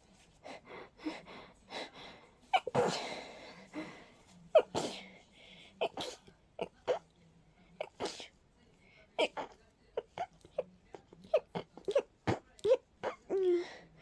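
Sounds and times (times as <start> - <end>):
noisy breath: 0.2 - 4.4, 5.0 - 5.8.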